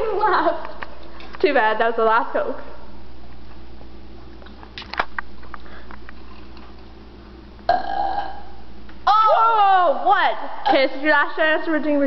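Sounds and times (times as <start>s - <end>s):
breathy burp: 7.7s - 8.6s.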